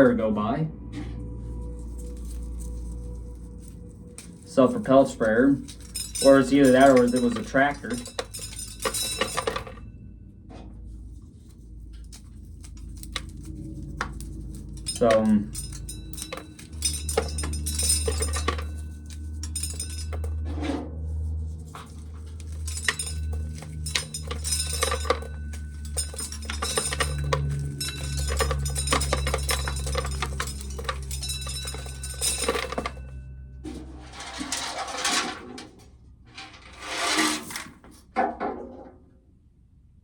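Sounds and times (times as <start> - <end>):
rustling scrapes: 1.3 - 9.8, 10.9 - 33.1, 33.7 - 38.1
corn kernels rattling on metal: 1.8 - 9.8, 11.4 - 20.4, 21.5 - 33.1, 36.6 - 37.9
corn sheller humming: 21.7 - 33.0.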